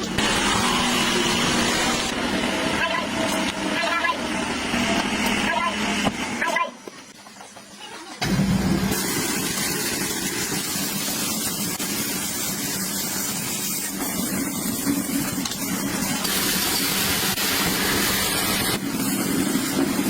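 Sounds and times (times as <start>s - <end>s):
loud even hiss: 8.2s - 20.0s.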